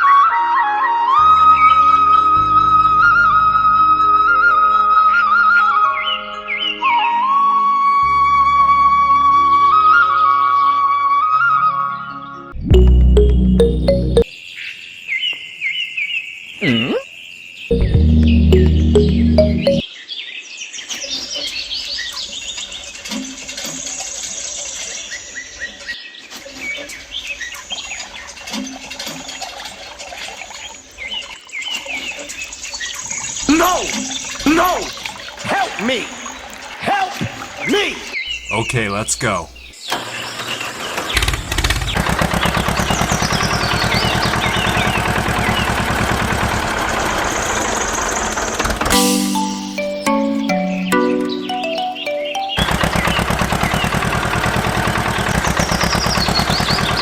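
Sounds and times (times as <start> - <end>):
loud low musical tone: 12.7 - 14.2, 17.7 - 19.8, 48.9 - 52.8
short high chirps: 12.7 - 14.3, 17.7 - 19.8, 48.9 - 52.9
small birds chirping: 30.7 - 39.9
small engine chugging: 41.2 - 47.6, 52.6 - 57.0.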